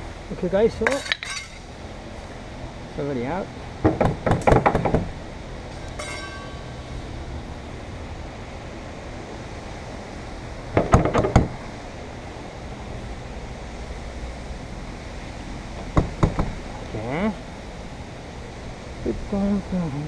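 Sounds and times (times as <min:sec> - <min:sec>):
steady low background hum: 0:00.0 - 0:20.0
ringing metal clink: 0:00.9 - 0:01.7, 0:05.7 - 0:07.0
clattering knocks: 0:05.7 - 0:06.9.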